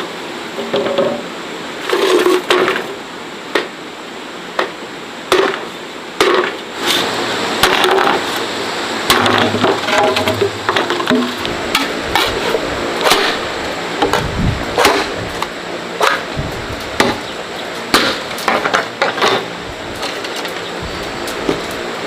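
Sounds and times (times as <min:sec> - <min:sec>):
sharp knocks and clatter: 0:09.1 - 0:12.4, 0:17.9 - 0:20.7.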